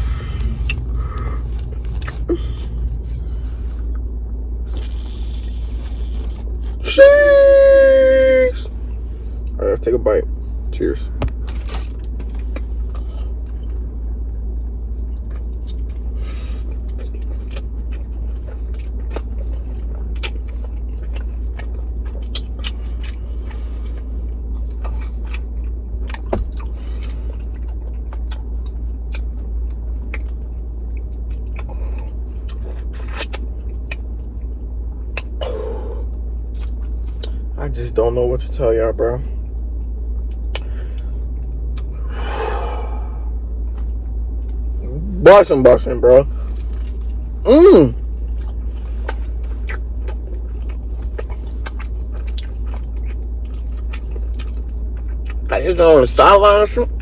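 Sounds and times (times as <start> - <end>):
chewing and biting sandwich: 0.0 - 6.8, 10.6 - 37.6, 46.3 - 55.5
low car rumble: 0.0 - 57.0.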